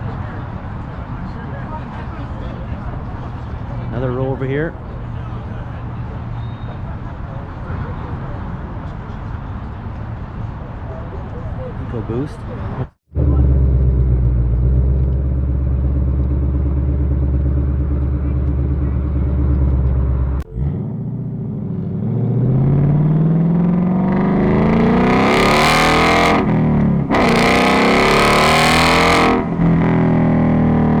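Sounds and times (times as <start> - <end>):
car engine idling: 13.1 - 31.0
engine revving with exhaust rasp: 13.1 - 31.0.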